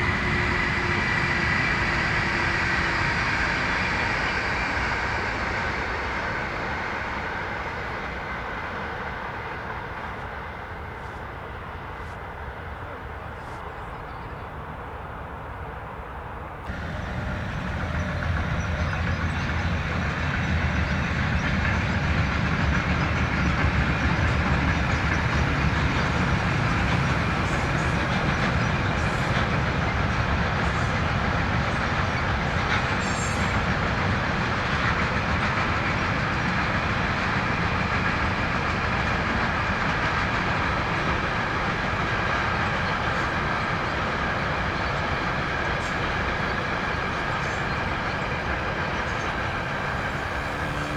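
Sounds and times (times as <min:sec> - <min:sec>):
train wheels on rails: 0:00.0 - 0:14.7, 0:16.2 - 0:50.9.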